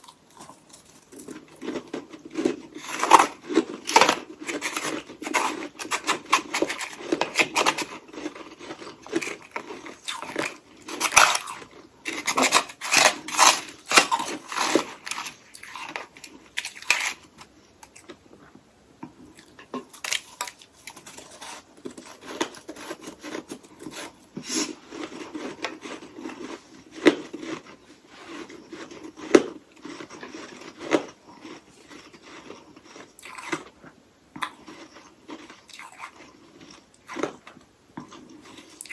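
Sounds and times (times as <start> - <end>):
crunching ice: 0.0 - 17.3.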